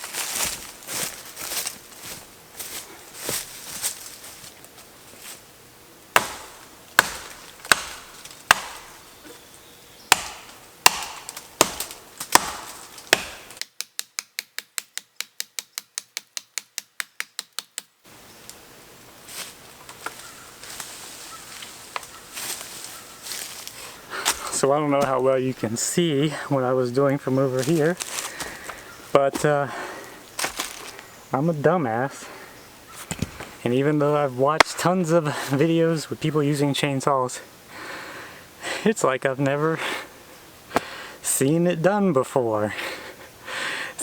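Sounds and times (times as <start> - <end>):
wood chopping blows: 6.1 - 9.0, 10.1 - 17.9, 40.7 - 41.0.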